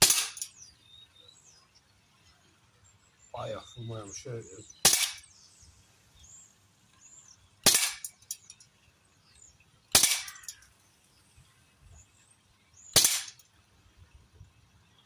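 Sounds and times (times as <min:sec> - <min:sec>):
air rifle shots: 0:00.0 - 0:00.5, 0:04.8 - 0:05.3, 0:07.6 - 0:08.2, 0:09.9 - 0:10.6, 0:12.9 - 0:13.4.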